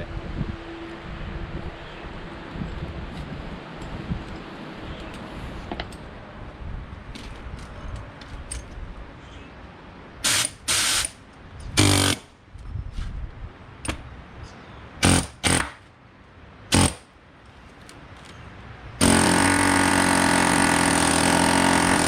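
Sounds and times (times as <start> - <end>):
pneumatic air hammer bursts: 10.2 - 11.2, 11.8 - 12.3, 15.0 - 15.8, 16.7 - 17.1, 19.0 - 22.0.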